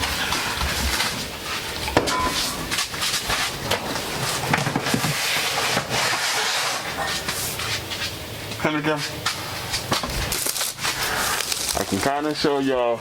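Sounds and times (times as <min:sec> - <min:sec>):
items knocking and clattering: 0:00.0 - 0:05.2.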